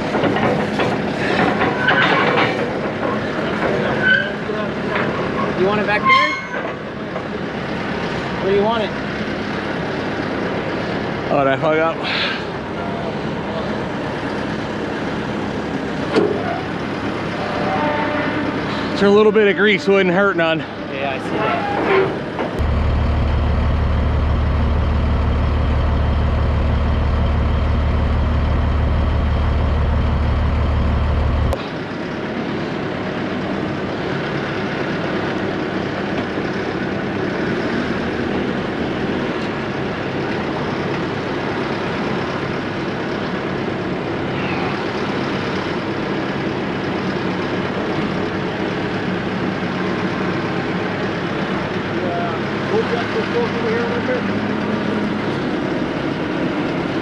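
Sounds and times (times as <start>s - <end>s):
diesel engine idling: 6.8s - 17.6s, 22.5s - 57.0s
loud low hum: 22.6s - 31.8s.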